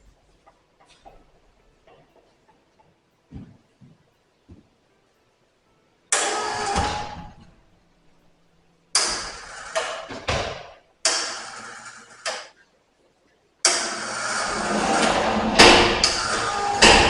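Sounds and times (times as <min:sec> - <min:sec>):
knocks and scraping: 0:06.2 - 0:08.4, 0:13.7 - 0:17.0.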